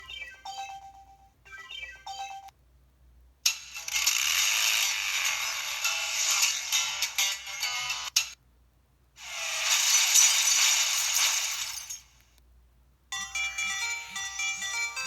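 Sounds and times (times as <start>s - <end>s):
phone electronic alert melody: 0.0s - 2.5s, 13.2s - 15.0s.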